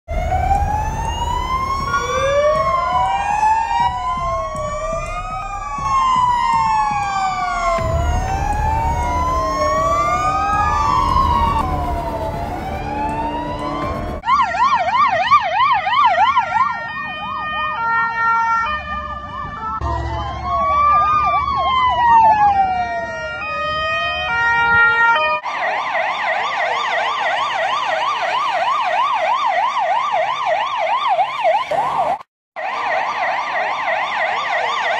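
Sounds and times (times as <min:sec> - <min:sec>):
low engine rumble: 0:00.1 - 0:14.2
siren fast yelp: 0:00.1 - 0:34.9
siren slow wail: 0:00.1 - 0:34.9.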